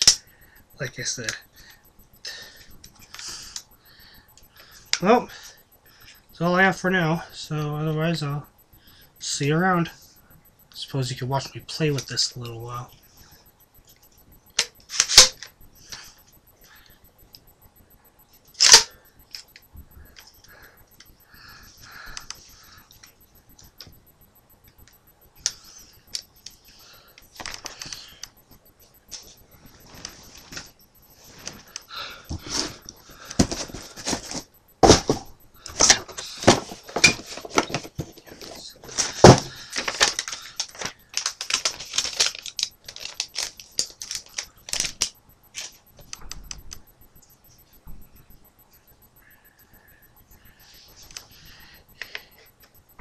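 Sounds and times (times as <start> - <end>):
sharp plastic clicks: 0.0 - 0.3, 13.9 - 17.5, 18.5 - 24.0, 31.4 - 47.6
plastic rattling and shuffling: 29.1 - 46.2.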